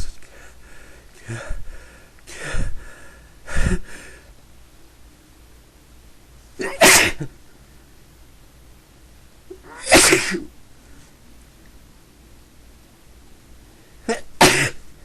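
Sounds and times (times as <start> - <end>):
person sneezing: 6.6 - 7.3, 9.5 - 10.5, 14.0 - 14.8.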